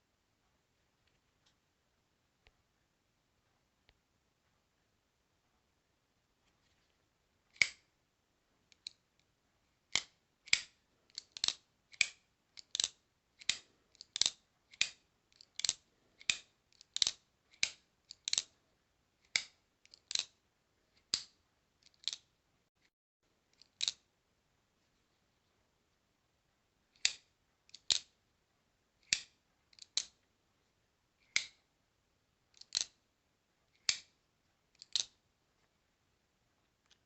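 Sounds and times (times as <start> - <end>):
folding knife metallic clicks: 31.3 - 31.6, 32.6 - 32.9.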